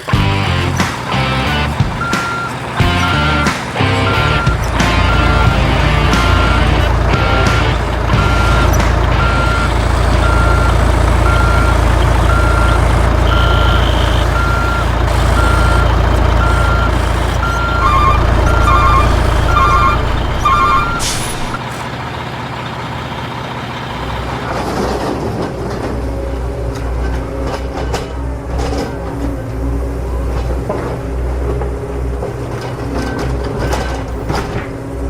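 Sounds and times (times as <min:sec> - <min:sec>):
truck reversing alarm beeping: 0:00.0 - 0:24.5
low engine rumble: 0:00.0 - 0:35.0.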